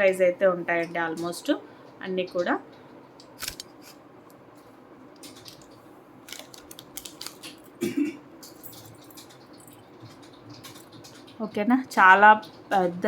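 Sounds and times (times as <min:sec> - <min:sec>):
small items clicking and crinkling: 0:05.2 - 0:07.8.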